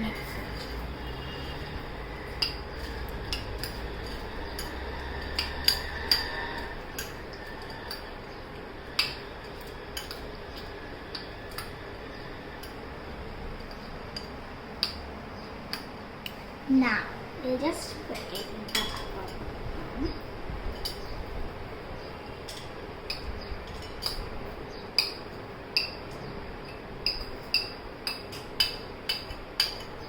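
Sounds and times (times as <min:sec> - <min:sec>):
spoon clinking against bowl: 0:02.3 - 0:08.1, 0:18.4 - 0:19.4, 0:26.7 - 0:30.0.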